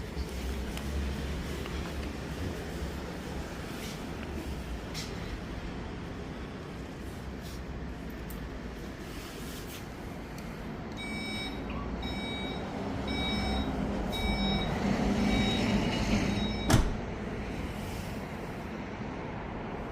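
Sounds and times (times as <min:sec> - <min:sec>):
warning beep: 0:11.0 - 0:15.7, 0:16.4 - 0:16.8
tailgate shutting thump: 0:16.7 - 0:17.0.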